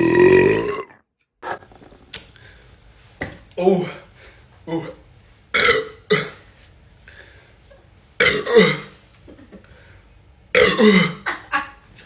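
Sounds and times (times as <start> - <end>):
boys burping loudly: 0.0 - 1.0.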